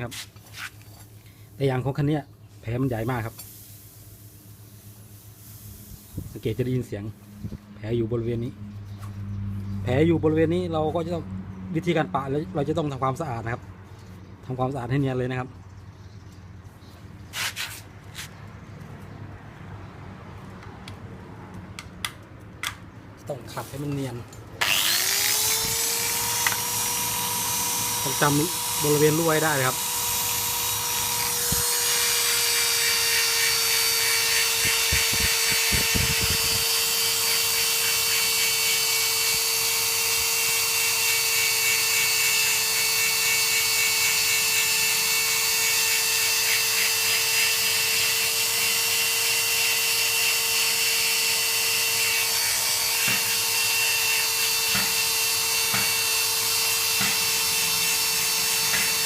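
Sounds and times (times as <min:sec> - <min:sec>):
power buffer whining: 0:24.6 - 0:59.0.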